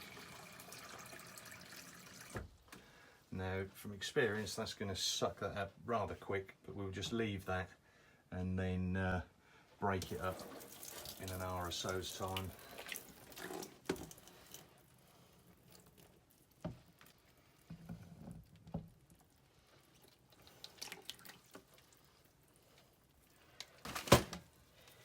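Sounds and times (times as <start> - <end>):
water dripping: 0.0 - 2.4, 10.0 - 17.6, 18.5 - 23.8.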